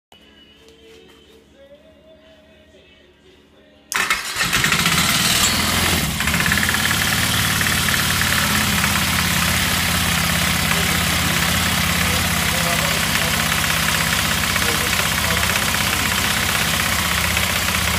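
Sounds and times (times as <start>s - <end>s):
atv engine idling with knock: 4.5s - 17.9s.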